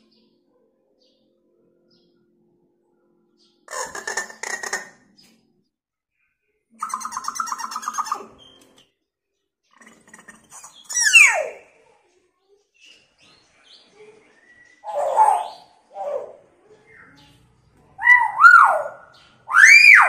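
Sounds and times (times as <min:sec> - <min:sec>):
bird rasping chatter calls: 0:03.7 - 0:05.2, 0:06.8 - 0:08.6, 0:09.7 - 0:11.6, 0:14.8 - 0:16.4.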